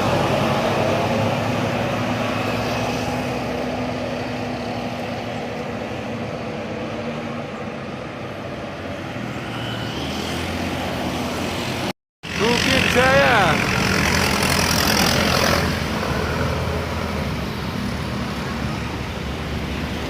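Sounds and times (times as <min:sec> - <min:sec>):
bus diesel engine drone: 0:00.0 - 0:20.0.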